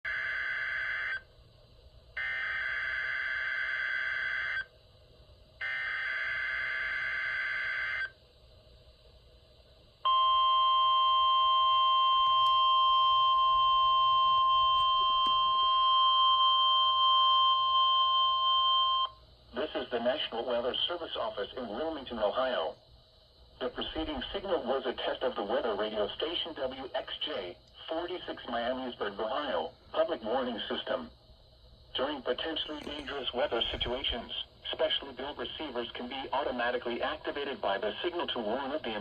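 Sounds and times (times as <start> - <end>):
steady warning alarm tone: 0.1 - 1.3, 2.2 - 4.7, 5.6 - 8.2, 10.0 - 19.2, 32.4 - 36.5.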